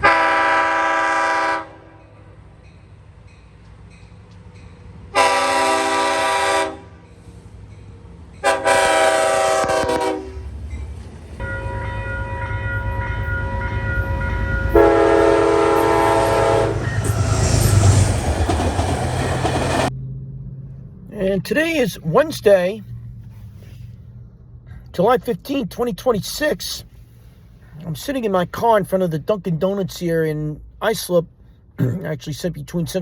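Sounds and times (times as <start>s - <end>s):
train horn blasts: 0.0s - 2.3s, 5.1s - 7.1s, 8.4s - 10.5s, 11.4s - 18.0s
train rumble passing: 0.0s - 29.3s.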